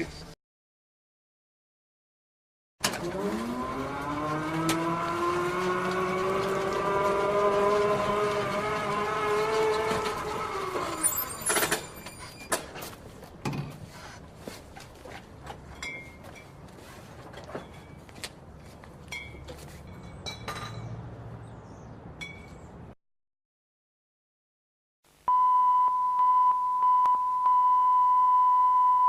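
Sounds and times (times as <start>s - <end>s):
engine revving: 2.8s - 11.1s.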